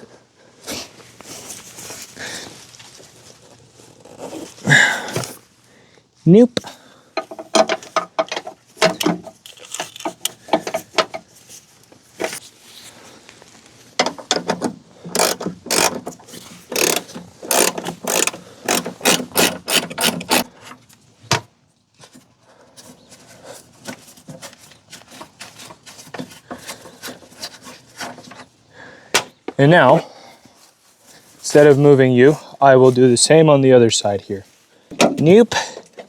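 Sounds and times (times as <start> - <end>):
handling noise: 13.9 - 20.5
ratchet wrench clicking: 15.1 - 16.0, 16.7 - 20.5.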